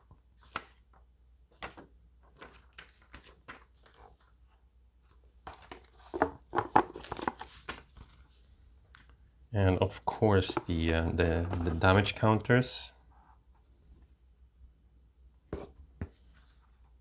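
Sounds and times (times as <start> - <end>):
paper rustling: 0.4 - 4.4, 5.5 - 8.4, 10.4 - 12.6.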